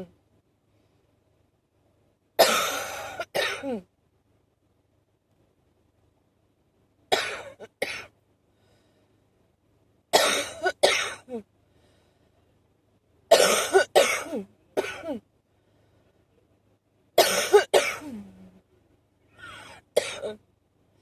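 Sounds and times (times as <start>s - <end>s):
person coughing wheezily: 2.4s - 3.8s, 7.1s - 8.1s, 10.2s - 11.3s, 13.3s - 15.2s, 17.2s - 18.2s, 19.5s - 20.4s.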